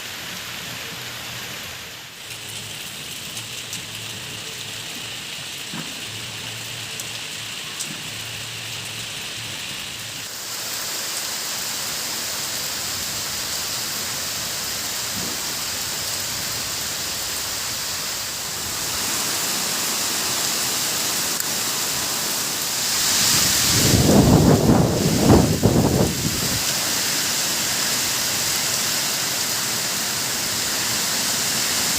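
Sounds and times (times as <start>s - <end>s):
steady rain falling: 0.0s - 31.9s.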